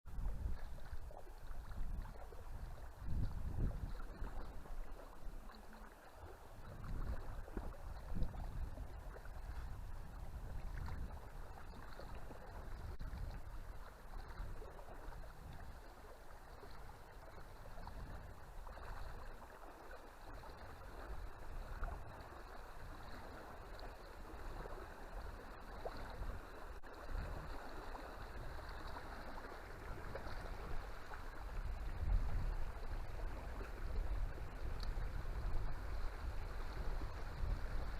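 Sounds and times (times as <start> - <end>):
wind gusting on microphone: 0.1 - 4.8, 6.6 - 15.8, 29.7 - 37.9
large river flowing: 0.2 - 37.9.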